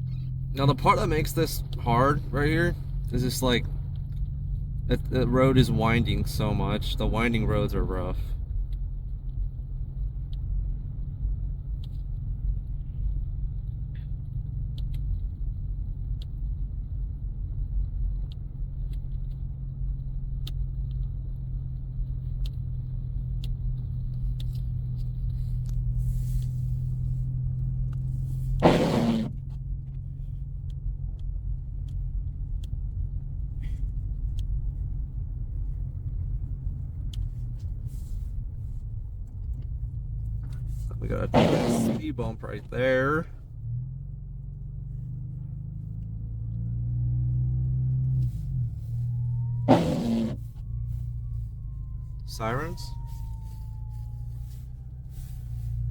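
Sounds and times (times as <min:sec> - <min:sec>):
tyres driving through snow: 0:00.0 - 0:08.6, 0:28.0 - 0:29.5, 0:33.9 - 0:55.9
car engine drone in cabin: 0:00.0 - 0:55.9.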